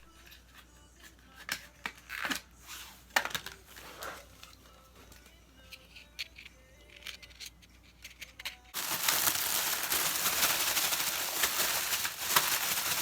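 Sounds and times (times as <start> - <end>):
plastic packaging crinkling: 8.8 - 13.0.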